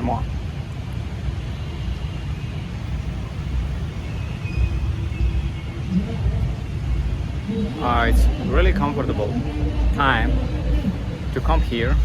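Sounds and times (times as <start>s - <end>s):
low uneven rumble: 4.6s - 12.0s.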